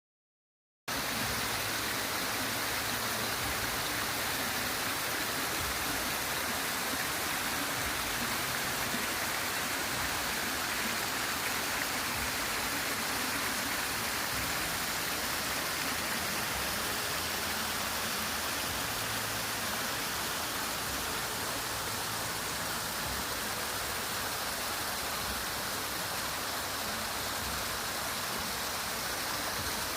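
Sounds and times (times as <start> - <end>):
waterfall roaring: 0.9 - 29.9.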